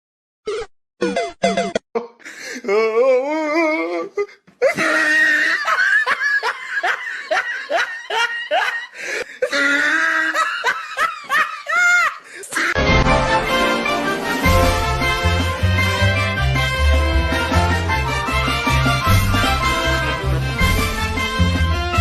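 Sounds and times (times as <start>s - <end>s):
person laughing hard: 4.6s - 12.8s.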